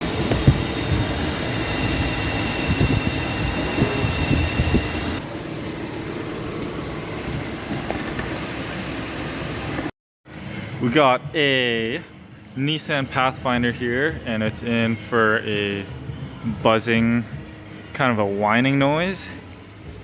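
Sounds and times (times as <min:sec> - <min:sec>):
car engine running: 0:00.0 - 0:09.9
high-pitched whine: 0:00.0 - 0:09.9.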